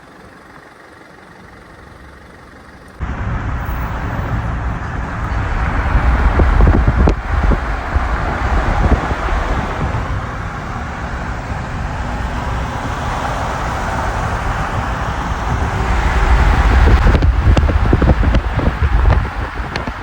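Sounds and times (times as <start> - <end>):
car engine running: 0.0 - 20.0
wind buffeting microphone: 3.0 - 20.0.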